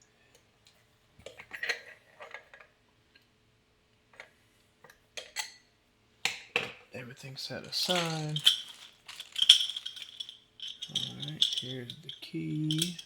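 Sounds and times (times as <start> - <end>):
metal lock tools clicking: 7.8 - 13.0.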